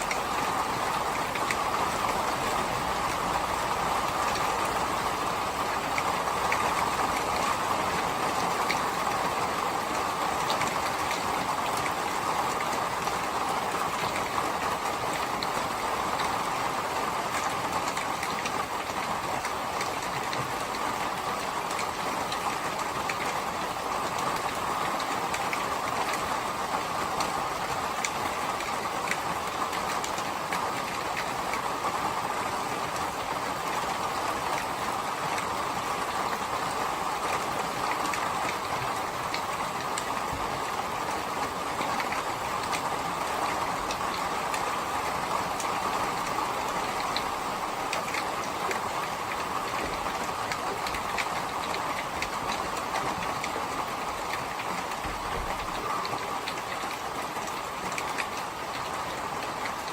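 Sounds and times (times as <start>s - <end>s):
raindrop ticks: 0.0s - 3.4s, 27.1s - 31.7s, 32.9s - 59.9s
steady rain hiss: 0.0s - 59.9s.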